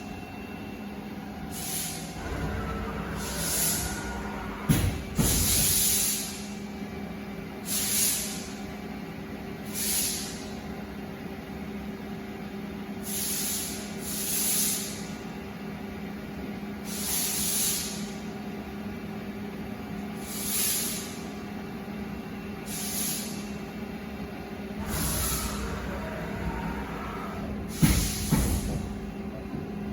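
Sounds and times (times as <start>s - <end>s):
short bursts of hissing: 1.5s - 2.1s, 5.3s - 6.4s, 7.6s - 8.5s, 9.7s - 10.4s, 13.0s - 15.0s, 16.9s - 18.1s, 20.2s - 21.2s, 22.6s - 23.4s
lathe humming: 24.8s - 27.7s.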